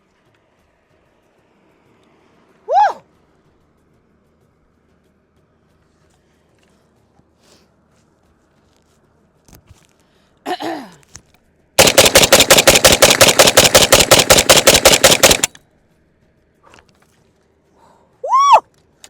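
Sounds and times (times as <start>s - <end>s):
rapid pistol gunshots: 11.8s - 15.6s.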